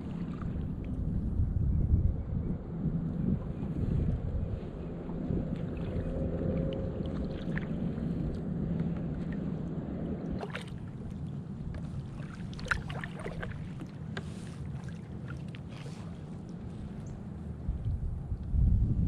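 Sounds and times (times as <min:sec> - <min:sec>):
steady low rumble: 0:00.0 - 0:19.0
paddle strokes splashing: 0:04.9 - 0:17.7.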